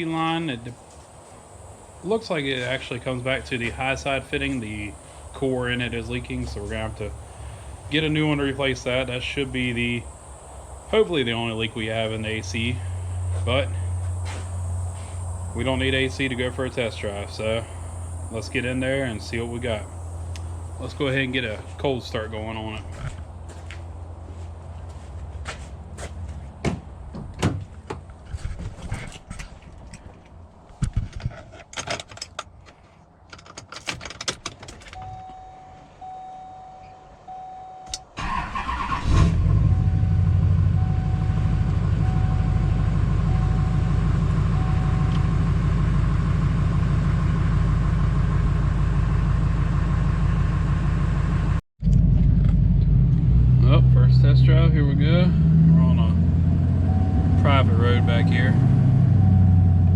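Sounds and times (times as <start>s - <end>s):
diesel engine idling: 0.0s - 27.1s, 38.2s - 59.9s
diesel engine cranking: 1.5s - 23.5s, 37.9s - 59.9s
knocks and clicks in truck cab: 26.6s - 28.6s
dashboard chime beeping: 35.0s - 38.0s, 40.8s - 43.9s, 44.5s - 45.2s.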